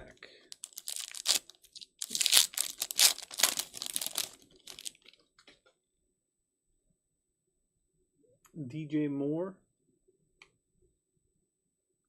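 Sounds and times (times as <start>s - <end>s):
foil wrapper tearing and crinkling: 0.6s - 5.1s.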